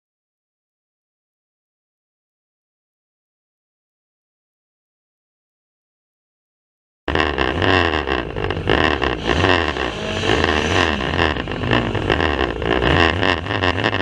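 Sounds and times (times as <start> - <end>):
racing car engines revving: 7.1 - 14.0.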